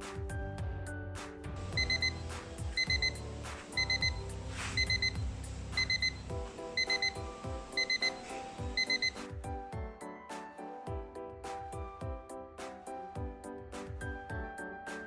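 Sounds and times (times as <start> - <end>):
alarm clock beeping: 1.7 - 9.4.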